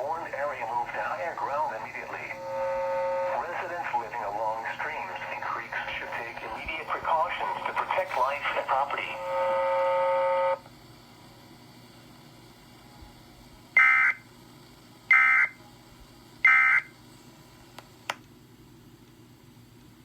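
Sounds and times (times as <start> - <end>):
steady tone: 0.0 - 10.6
warbling data bursts: 0.0 - 10.6.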